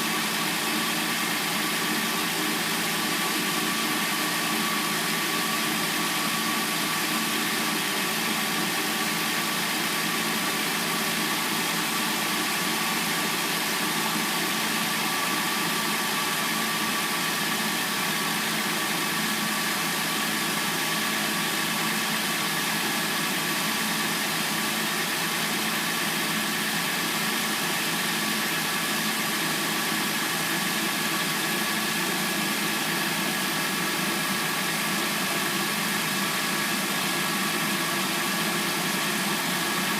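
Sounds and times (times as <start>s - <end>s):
car engine idling: 0.0s - 39.9s.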